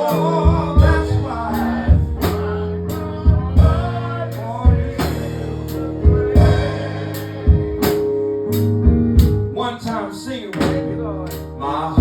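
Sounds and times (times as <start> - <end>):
people singing: 0.0 - 8.1, 9.6 - 12.0
drum kit slow beat: 0.0 - 9.6, 10.6 - 12.0
bass: 0.0 - 10.0, 10.6 - 12.0
keyboard chords: 0.0 - 12.0.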